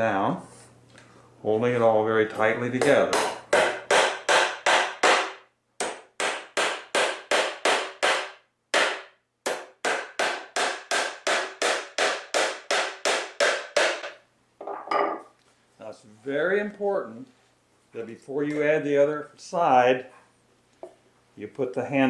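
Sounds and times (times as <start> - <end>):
hammer driving nails: 3.1 - 14.2.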